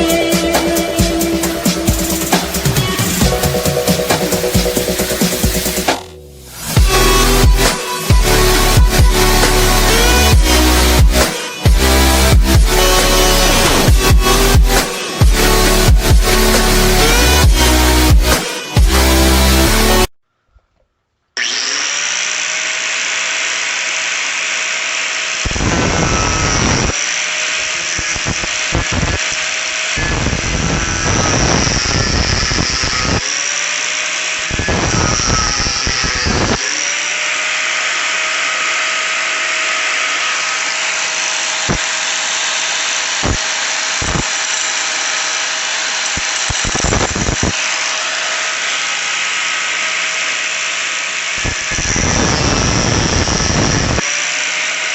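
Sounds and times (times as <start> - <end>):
harsh rough grinding noise: 0.0 - 20.1, 21.4 - 54.9
drill press motor whine: 21.4 - 54.9.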